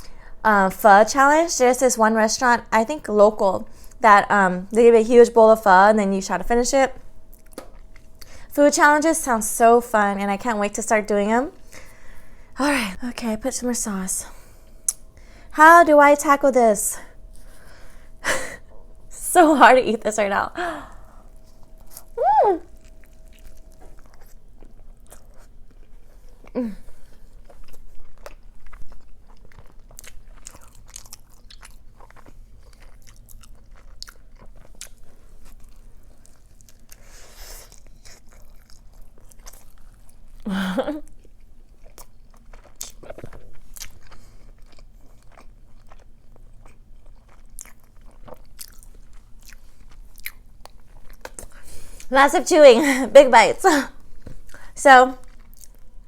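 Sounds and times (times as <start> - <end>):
short hum: 17.0 - 24.0
chewing and biting food: 22.7 - 40.4, 41.0 - 52.1, 54.0 - 56.0.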